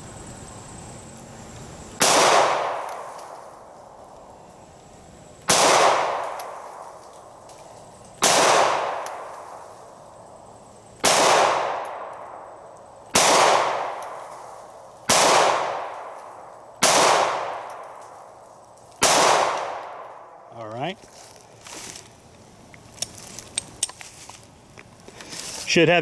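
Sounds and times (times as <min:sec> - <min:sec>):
pistol shots: 0:02.0 - 0:03.1, 0:05.5 - 0:06.6, 0:08.2 - 0:09.5, 0:11.0 - 0:12.3, 0:13.1 - 0:14.2, 0:15.1 - 0:16.2, 0:16.8 - 0:18.0, 0:19.0 - 0:20.3.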